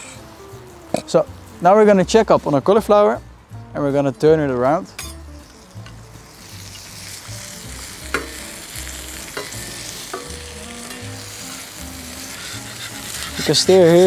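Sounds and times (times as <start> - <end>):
food sizzling in a pan: 0.0 - 1.6, 5.2 - 14.0.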